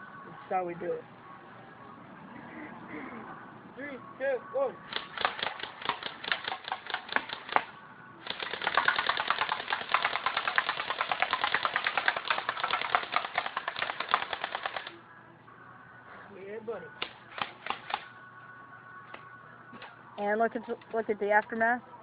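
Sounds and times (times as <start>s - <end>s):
airsoft gun firing rapidly: 4.9s - 14.9s, 17.0s - 18.1s.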